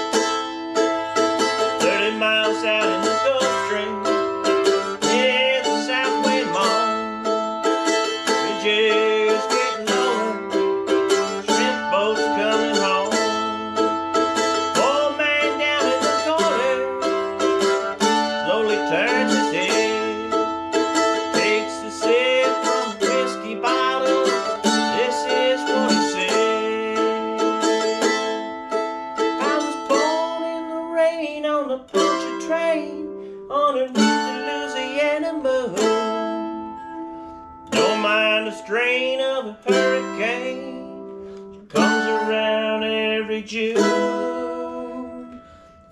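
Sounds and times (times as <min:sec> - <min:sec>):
mandolin playing: 0:00.0 - 0:45.9.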